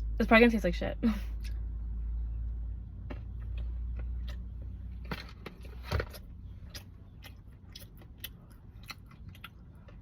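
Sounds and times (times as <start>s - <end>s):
steady low rumble: 0.0s - 10.0s
person chewing a cookie: 3.3s - 10.0s.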